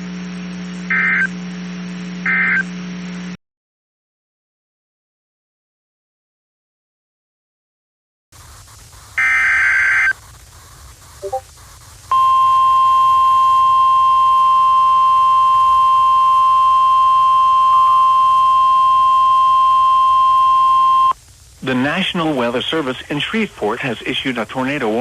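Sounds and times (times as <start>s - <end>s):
raspy electronic data screech: 9.2s - 10.2s, 11.2s - 11.6s.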